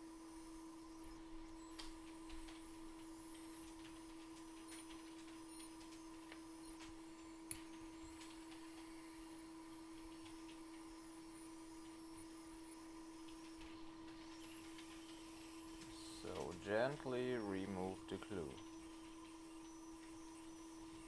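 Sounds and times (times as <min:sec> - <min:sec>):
electrical hum with high whine: 0:00.0 - 0:21.0.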